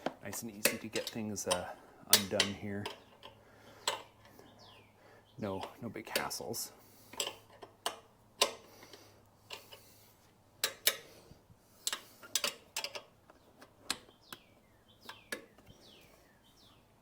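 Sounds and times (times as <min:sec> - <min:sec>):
hand tools clinking on metal: 0:00.0 - 0:04.2.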